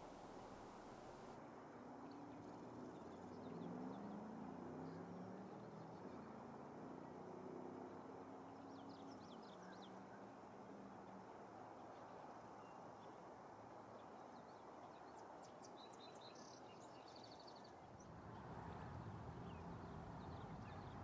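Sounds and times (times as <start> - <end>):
steady hiss: 0.0 - 1.4.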